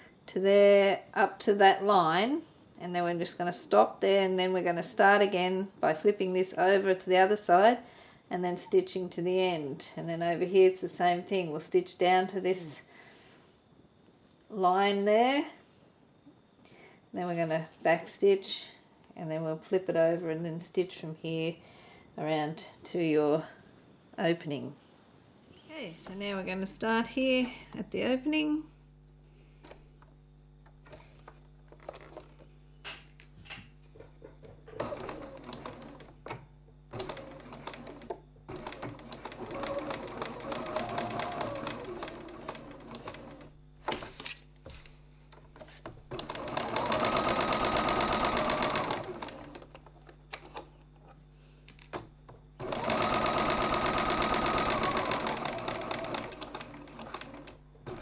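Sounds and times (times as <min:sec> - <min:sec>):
sewing machine stitching: 0:34.4 - 0:43.5, 0:45.6 - 0:49.9, 0:52.6 - 0:58.0.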